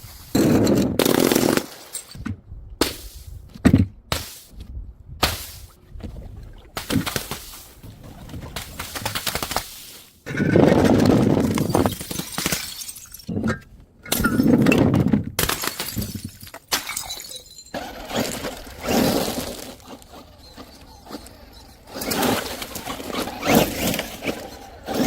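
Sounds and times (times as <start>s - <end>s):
glass bottles smashing: 11.4s - 14.7s, 15.4s - 19.8s.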